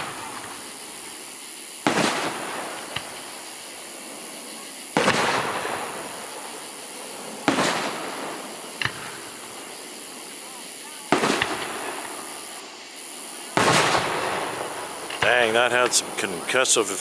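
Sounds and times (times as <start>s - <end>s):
fireworks booming: 0.0s - 17.0s.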